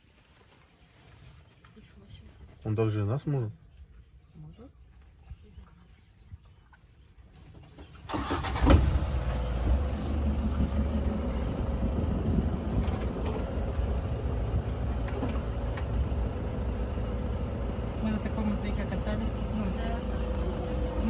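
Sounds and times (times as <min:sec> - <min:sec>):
vehicle engine starting and running: 0:07.9 - 0:21.0.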